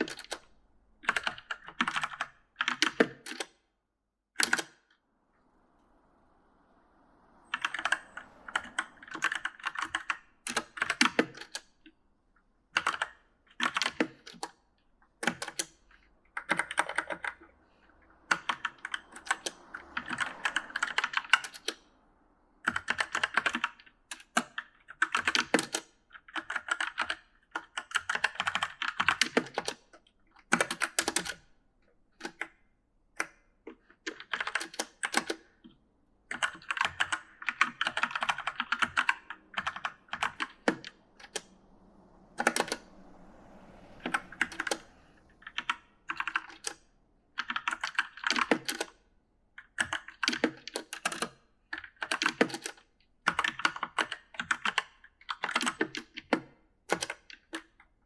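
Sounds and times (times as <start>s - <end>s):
mechanical keyboard typing: 0.0s - 3.5s, 4.4s - 4.8s, 7.5s - 11.7s, 12.7s - 14.6s, 15.2s - 15.7s, 16.4s - 17.5s, 18.3s - 21.8s, 22.6s - 29.9s, 30.5s - 31.4s, 33.2s - 41.5s, 42.4s - 42.8s, 44.0s - 44.8s, 45.4s - 46.8s, 47.4s - 49.0s, 49.6s - 57.8s.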